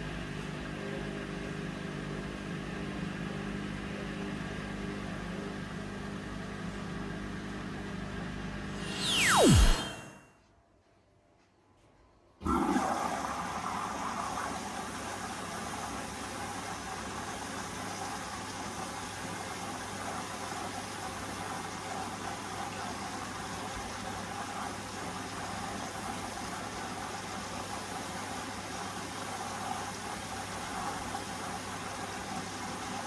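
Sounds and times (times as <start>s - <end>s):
water rushing into washing machine: 12.4s - 33.0s.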